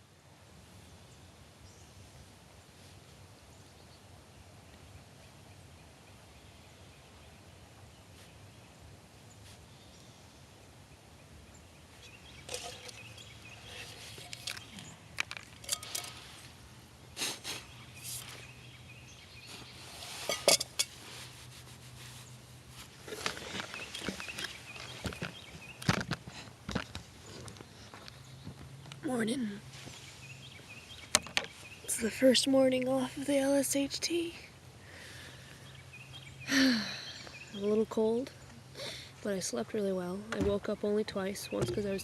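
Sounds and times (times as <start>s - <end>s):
rustling and crunching: 11.9s - 18.6s, 19.4s - 29.0s.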